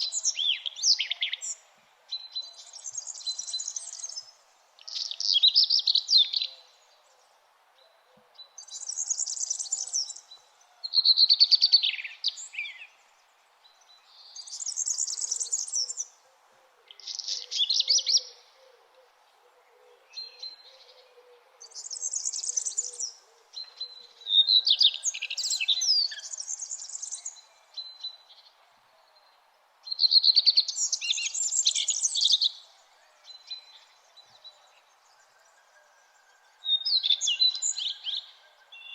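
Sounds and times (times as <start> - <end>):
faint steady background hiss: 0.0 - 38.9
songbirds chirping and trilling: 0.0 - 38.9.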